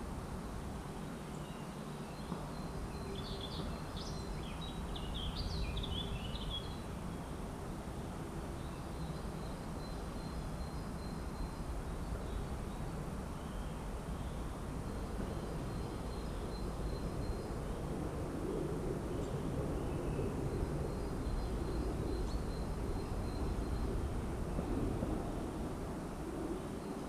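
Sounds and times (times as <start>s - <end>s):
songbird chirping: 1.0s - 7.4s.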